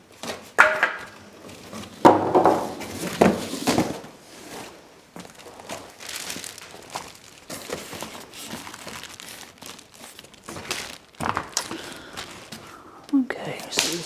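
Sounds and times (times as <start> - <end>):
packaging crinkling: 2.9 - 14.0.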